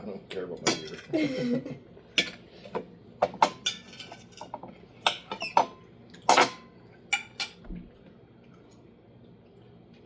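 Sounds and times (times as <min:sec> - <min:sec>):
cutlery clinking on plates: 0:02.2 - 0:07.7.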